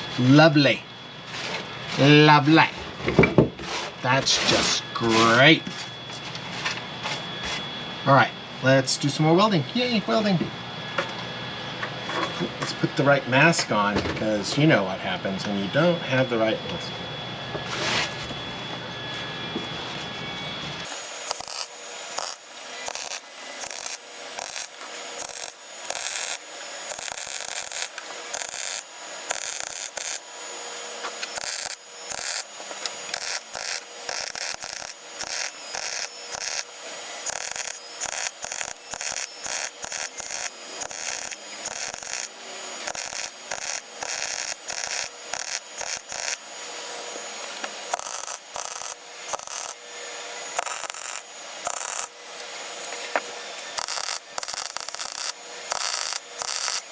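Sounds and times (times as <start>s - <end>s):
welder crackling: 20.8s - 56.9s.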